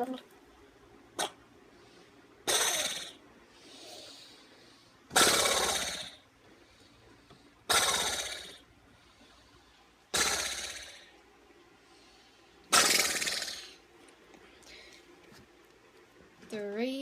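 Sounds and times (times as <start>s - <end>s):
person making harsh rasping noise: 12.7s - 13.8s.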